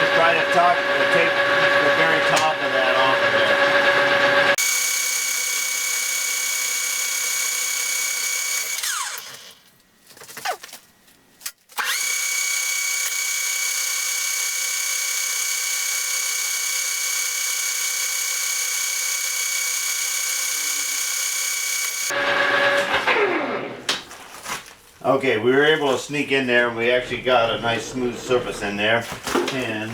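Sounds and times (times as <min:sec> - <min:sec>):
metal lathe whining: 0:11.8 - 0:22.1.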